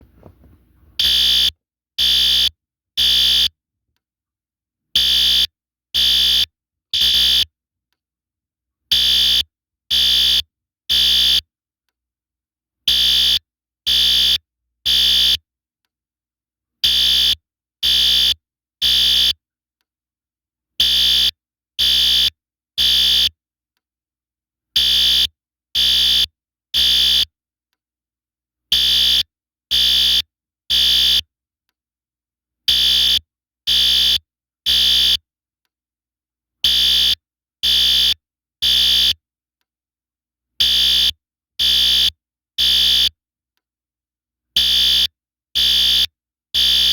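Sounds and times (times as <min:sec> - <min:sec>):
fire alarm horn blasts: 0:01.0 - 0:03.5, 0:05.0 - 0:07.5, 0:08.9 - 0:11.4, 0:12.9 - 0:15.4, 0:16.8 - 0:19.4, 0:20.8 - 0:23.3, 0:24.8 - 0:27.3, 0:28.7 - 0:31.2, 0:32.7 - 0:35.2, 0:36.6 - 0:39.2, 0:40.6 - 0:43.1, 0:44.6 - 0:46.9.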